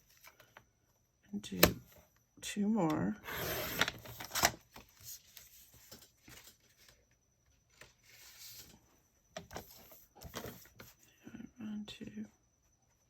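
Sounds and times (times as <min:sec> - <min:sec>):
paper rubbing and sliding: 0:07.7 - 0:08.8.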